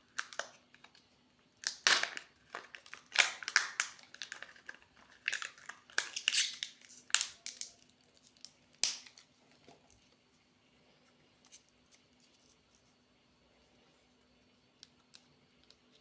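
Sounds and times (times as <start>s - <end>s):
plastic packaging crinkling: 1.6s - 9.6s.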